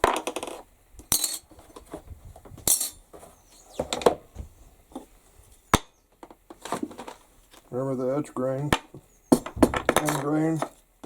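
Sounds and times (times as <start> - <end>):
metal tools clinking on workbench: 1.1 - 1.5, 2.6 - 3.0.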